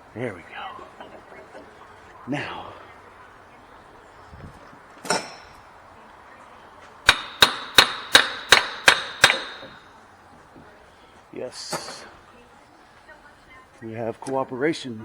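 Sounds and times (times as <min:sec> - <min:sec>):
hammer striking metal: 0:07.1 - 0:09.9.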